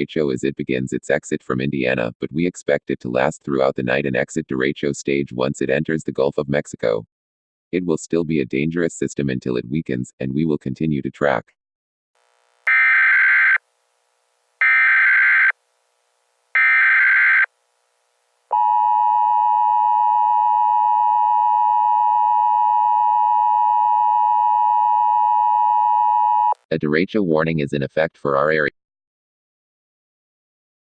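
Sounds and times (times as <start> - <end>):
screeching data bursts: 14.6 - 15.6.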